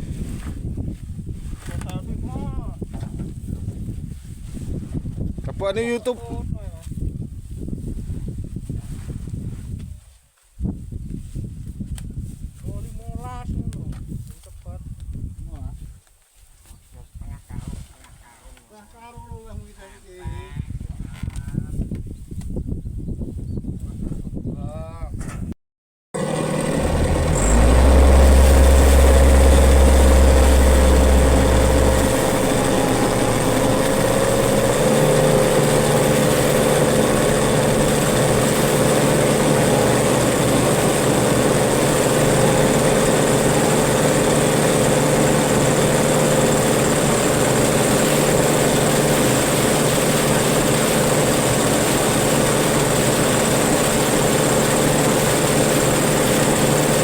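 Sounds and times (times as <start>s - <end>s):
combine harvester humming: 26.2s - 57.0s
deep low drone: 26.2s - 57.0s
high whine: 26.3s - 54.8s.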